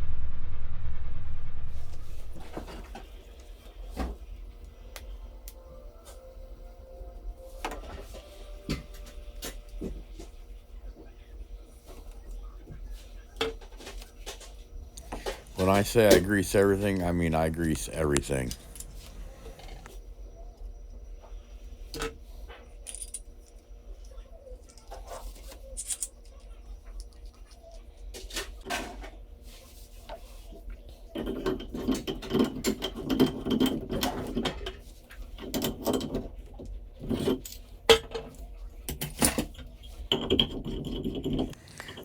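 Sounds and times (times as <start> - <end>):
metal tools clinking and knocking: 22.8 - 23.2.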